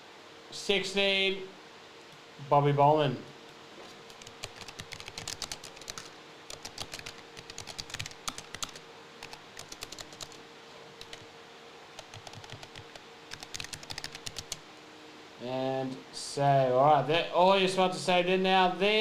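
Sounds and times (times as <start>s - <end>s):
keyboard typing clicks: 4.1s - 10.4s, 11.0s - 11.3s, 12.0s - 14.6s.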